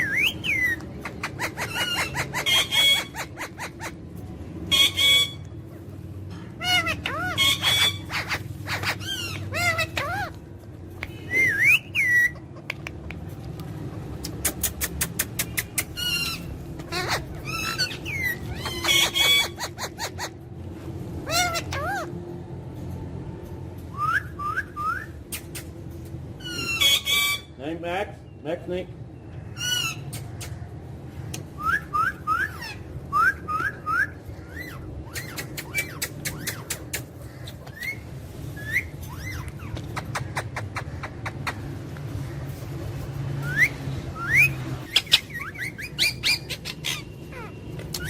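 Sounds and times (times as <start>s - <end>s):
parrot whistling: 0.0s - 4.0s, 11.3s - 12.4s, 23.9s - 25.2s, 31.6s - 36.8s, 43.4s - 48.0s
parrot calls: 0.0s - 5.9s, 6.5s - 10.5s, 11.3s - 12.8s, 13.9s - 20.5s, 21.2s - 22.2s, 26.4s - 27.6s, 29.5s - 30.6s, 31.3s - 41.8s, 43.4s - 48.0s
parrot clicks: 12.6s - 13.3s, 14.2s - 15.9s.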